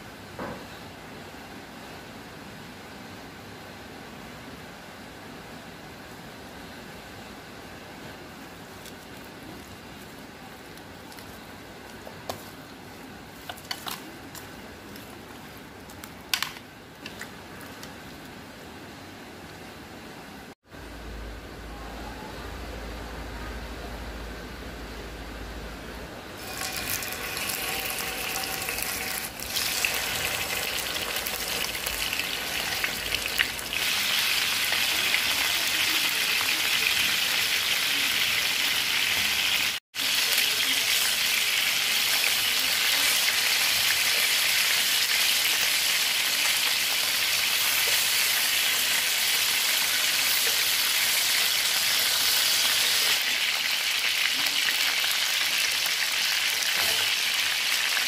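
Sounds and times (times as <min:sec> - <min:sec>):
chicken wings sizzling in oil: 0:26.4 - 0:58.0.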